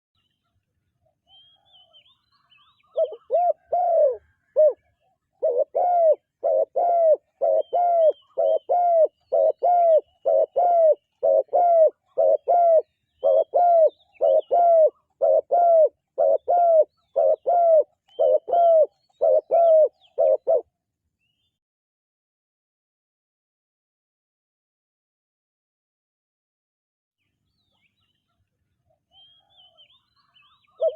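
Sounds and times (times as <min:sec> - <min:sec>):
faint high bird chirps: 0:00.2 - 0:20.5, 0:27.2 - 0:30.9
dove cooing: 0:02.6 - 0:20.7, 0:29.1 - 0:30.9.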